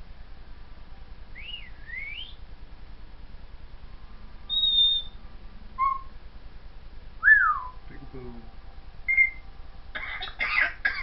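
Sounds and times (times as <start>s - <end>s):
parrot whistling beeps: 4.5s - 5.2s, 5.8s - 6.1s, 7.2s - 7.8s, 9.1s - 9.4s.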